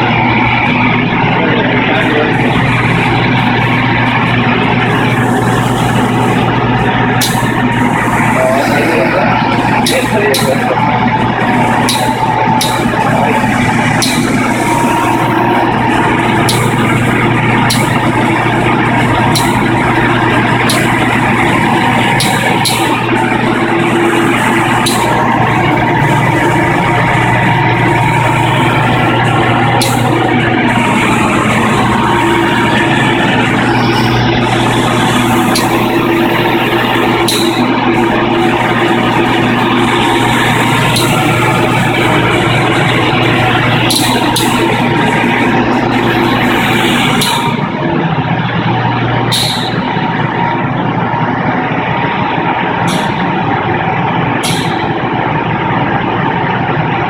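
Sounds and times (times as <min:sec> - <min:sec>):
furnace roaring: 0:00.0 - 0:57.0
valve clicking: 0:11.8 - 0:13.0, 0:19.3 - 0:19.7, 0:35.4 - 0:36.1.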